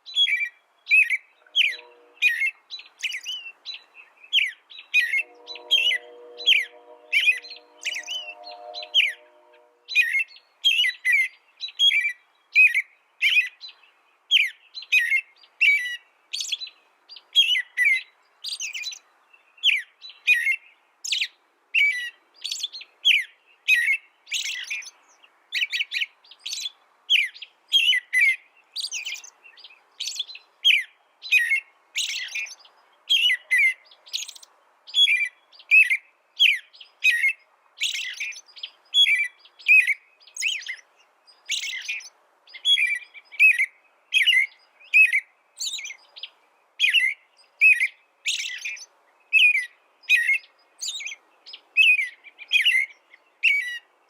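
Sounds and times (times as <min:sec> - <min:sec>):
songbird chirping: 0:00.0 - 0:54.0.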